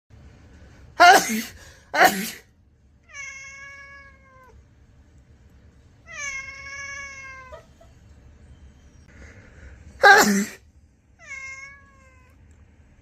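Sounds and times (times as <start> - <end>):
cat meowing: 3.0 - 4.6, 6.0 - 7.9, 11.2 - 12.4.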